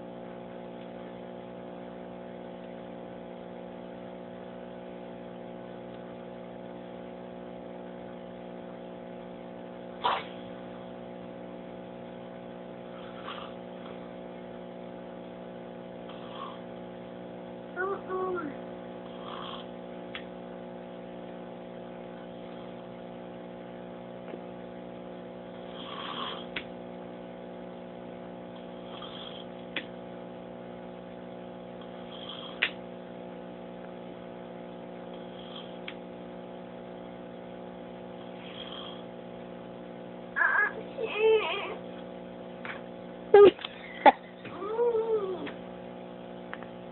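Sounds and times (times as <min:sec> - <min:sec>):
steady hum: 0:00.0 - 0:46.9
man snoring: 0:12.8 - 0:13.7, 0:16.0 - 0:16.7, 0:19.0 - 0:19.8, 0:25.6 - 0:26.6, 0:28.7 - 0:29.6, 0:32.0 - 0:32.7, 0:35.2 - 0:35.9, 0:38.2 - 0:39.1.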